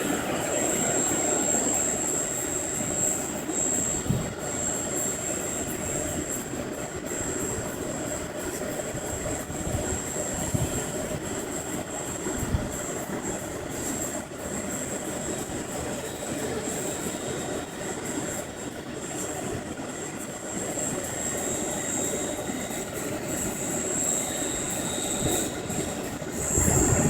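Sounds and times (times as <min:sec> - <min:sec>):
high-pitched motor whine: 0:00.0 - 0:11.6, 0:20.0 - 0:27.0
helicopter rotor whoosh: 0:20.8 - 0:27.0.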